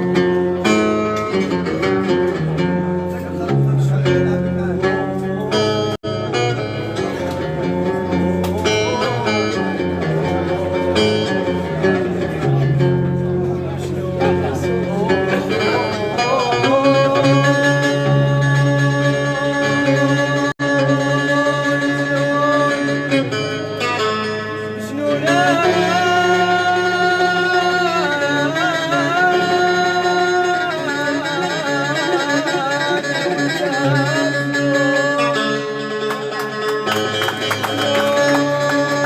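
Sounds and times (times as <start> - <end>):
plucked string accompaniment: 0.0 - 39.0
person singing: 14.4 - 39.0.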